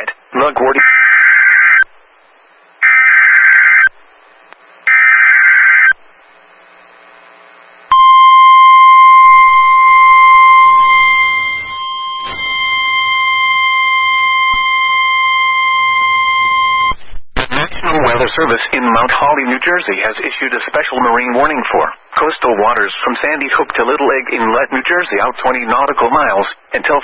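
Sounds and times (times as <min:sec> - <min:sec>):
steady warning alarm tone: 0:02.8 - 0:03.9, 0:04.9 - 0:06.0, 0:07.9 - 0:17.0
buzzy digital header bursts: 0:09.1 - 0:18.2.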